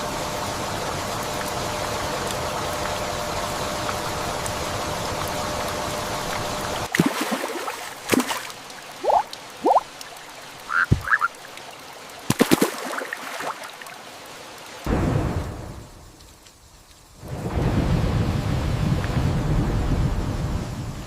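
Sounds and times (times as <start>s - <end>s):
steady rain: 0.0s - 21.0s
short rising animal calls: 10.7s - 11.4s.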